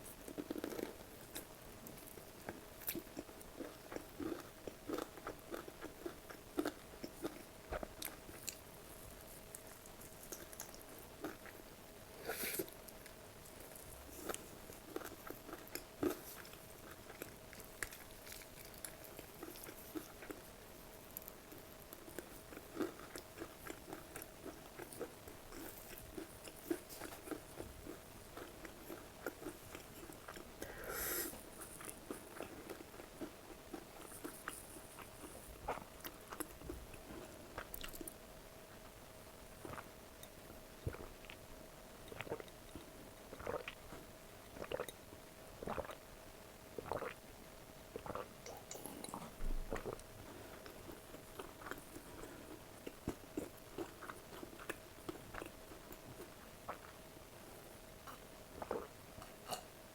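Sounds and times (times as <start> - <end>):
chewing and crunching: 0.0 - 11.6, 12.6 - 20.5, 21.1 - 30.7, 31.6 - 38.2, 42.0 - 45.0, 46.8 - 47.2, 48.0 - 57.0, 58.0 - 59.6.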